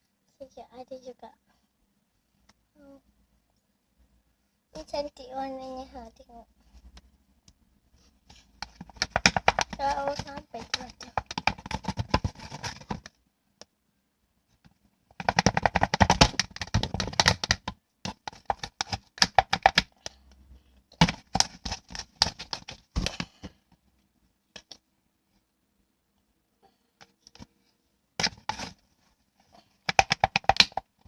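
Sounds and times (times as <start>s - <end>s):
slime crackling and popping: 8.7s - 12.2s.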